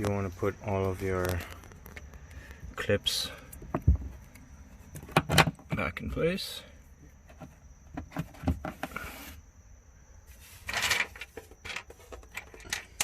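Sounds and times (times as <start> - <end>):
scraping rustle: 10.3 - 13.0.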